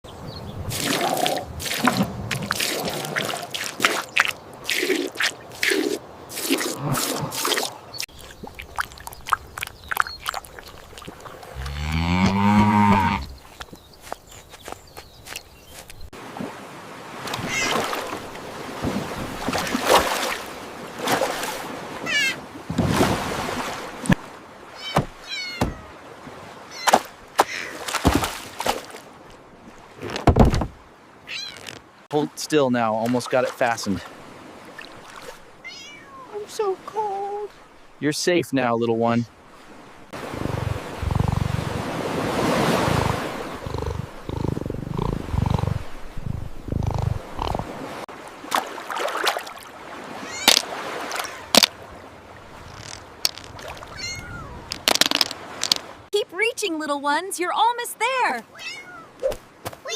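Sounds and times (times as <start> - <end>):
water splashing and dripping: 0.6 - 14.1, 16.1 - 21.9, 22.5 - 30.7, 32.8 - 35.7, 47.6 - 56.1
cat mewing: 17.4 - 17.9, 22.0 - 22.4, 24.8 - 26.0, 31.3 - 31.6, 35.6 - 36.3, 50.2 - 50.6, 53.8 - 54.8, 58.5 - 59.2.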